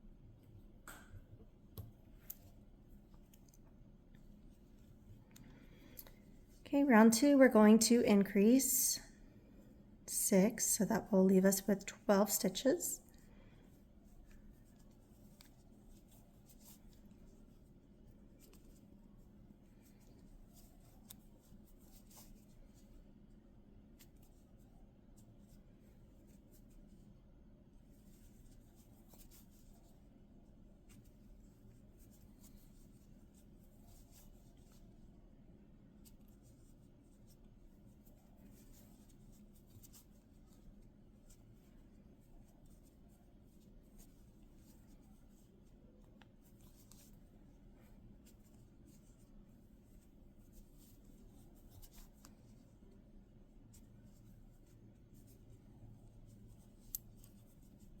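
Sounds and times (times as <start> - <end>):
low steady hum: 0.0 - 58.0
yarn ticks and rustles from crochet: 0.4 - 8.7, 14.2 - 23.0, 27.9 - 30.0, 36.0 - 53.0, 53.6 - 58.0.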